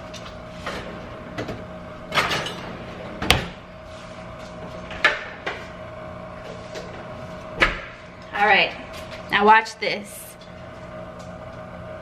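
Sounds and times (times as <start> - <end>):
steady hum: 0.0 - 12.0.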